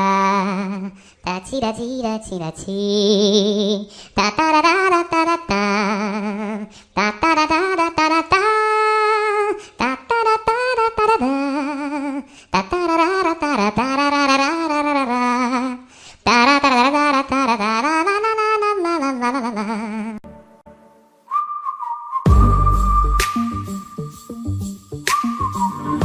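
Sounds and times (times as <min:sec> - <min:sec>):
ringtone melody with vibrato: 0:22.3 - 0:26.0.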